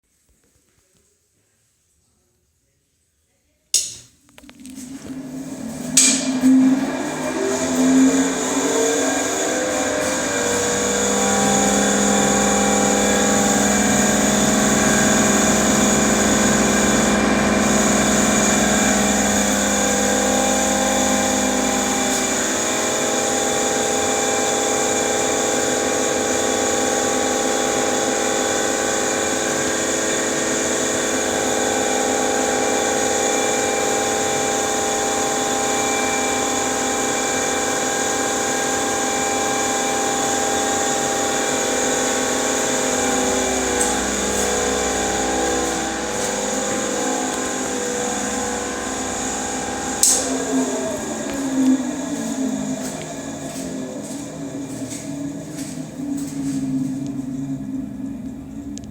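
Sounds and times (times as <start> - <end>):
ventilation fan droning: 3.8 - 58.9
whining motor bearings: 4.9 - 27.7.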